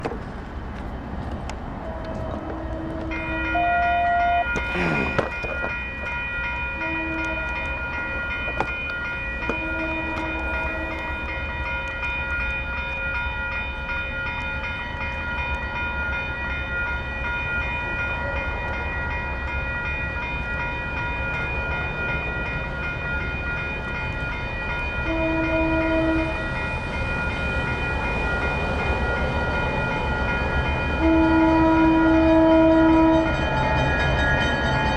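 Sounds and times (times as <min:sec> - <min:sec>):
diesel locomotives rumbling: 0:00.0 - 0:34.9
train horn blasts: 0:01.9 - 0:05.2, 0:06.8 - 0:07.7, 0:09.5 - 0:11.1, 0:25.0 - 0:26.4, 0:31.0 - 0:33.3
electronic crossing bell ringing: 0:03.1 - 0:34.9.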